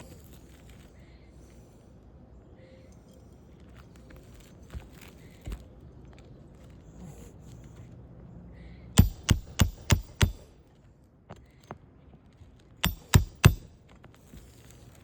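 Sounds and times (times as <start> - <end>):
hammer striking nail: 9.0 - 10.5, 12.8 - 13.7.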